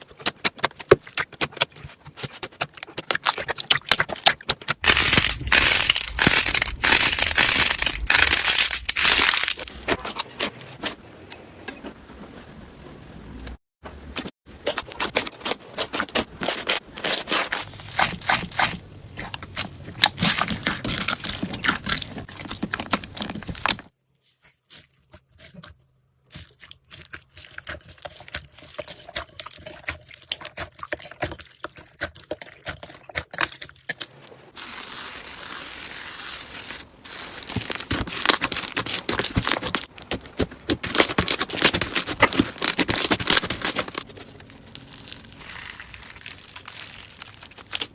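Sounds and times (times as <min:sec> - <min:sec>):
slime crackling and popping: 0:02.2 - 0:09.7, 0:37.4 - 0:47.9.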